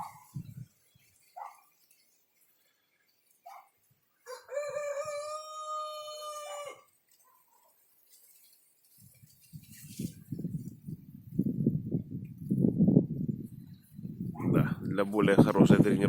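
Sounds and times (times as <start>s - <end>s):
wind buffeting microphone: 0.0s - 0.9s, 9.0s - 16.0s
rooster crowing: 4.2s - 6.9s.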